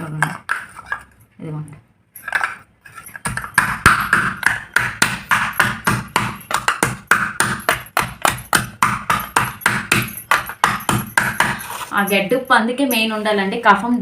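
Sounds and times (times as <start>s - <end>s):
pounding in a bowl: 3.1s - 11.8s.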